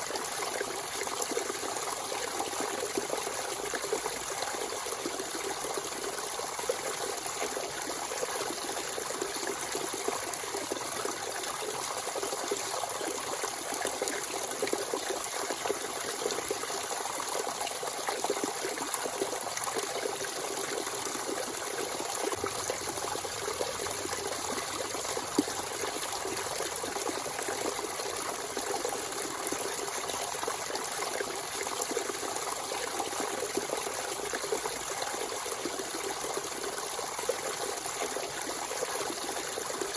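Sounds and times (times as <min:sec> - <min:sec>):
spring water trickling: 0:20.5 - 0:32.9.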